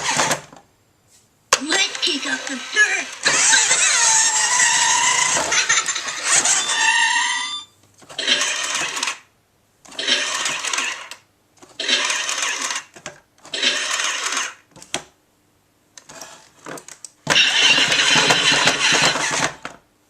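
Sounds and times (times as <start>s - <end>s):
toy engine sound effect: 1.6s - 9.1s, 17.3s - 19.5s
toy motor and gears buzzing: 1.7s - 9.2s, 10.0s - 11.2s, 11.8s - 12.9s, 13.5s - 14.6s, 17.3s - 19.6s.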